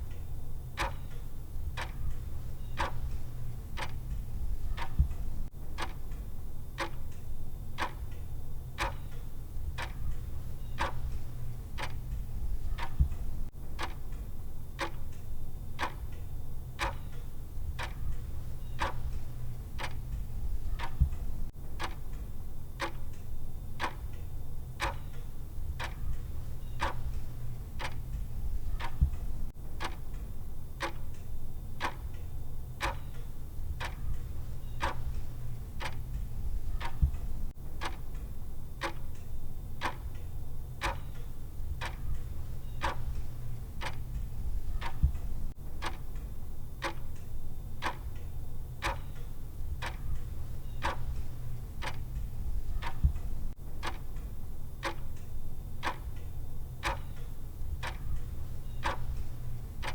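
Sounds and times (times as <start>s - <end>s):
timer ticking: 0.0s - 16.2s, 16.8s - 59.9s
low steady hum: 0.0s - 59.9s.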